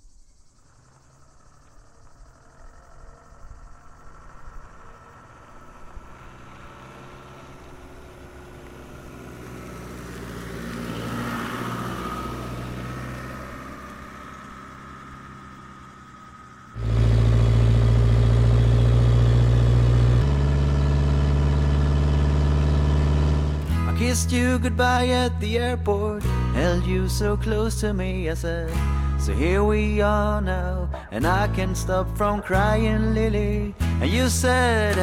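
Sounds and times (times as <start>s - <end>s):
traffic noise: 0.7s - 32.0s
vehicle passing: 2.2s - 23.8s.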